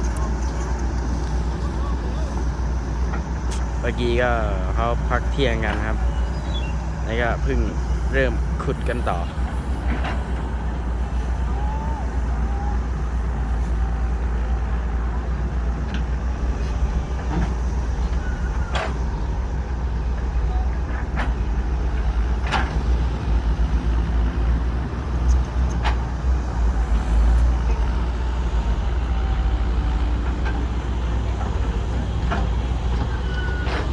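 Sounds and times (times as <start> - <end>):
heavy diesel engines rumbling: 0.0 - 33.9.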